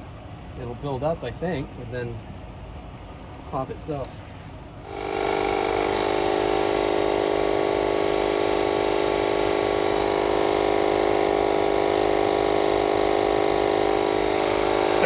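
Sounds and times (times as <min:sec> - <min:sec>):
air pump humming: 0:04.0 - 0:15.0.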